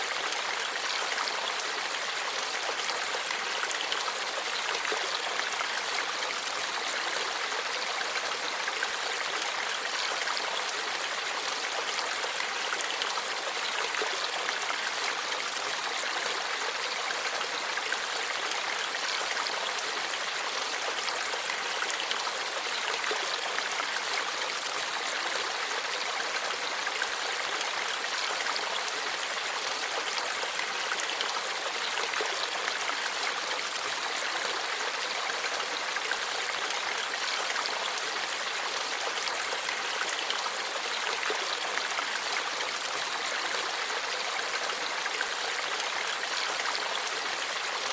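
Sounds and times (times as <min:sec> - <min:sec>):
stream babbling over rocks: 0:00.0 - 0:47.9.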